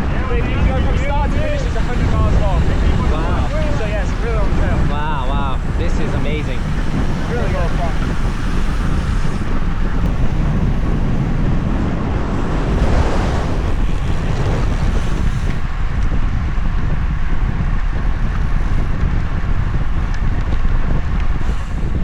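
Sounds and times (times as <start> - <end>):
wind buffeting microphone: 0.0 - 22.0.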